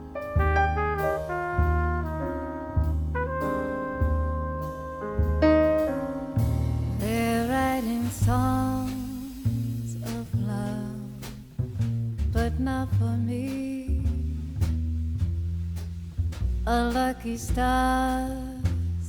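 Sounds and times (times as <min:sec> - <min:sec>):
sliding horn-like melody: 0:00.0 - 0:09.0
piano chords: 0:00.0 - 0:09.7
low bass line: 0:00.0 - 0:19.0.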